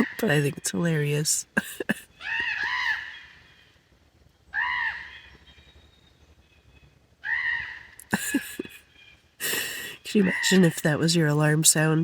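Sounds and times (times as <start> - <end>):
crows cawing: 2.2 - 3.7, 4.5 - 5.4, 7.2 - 8.0.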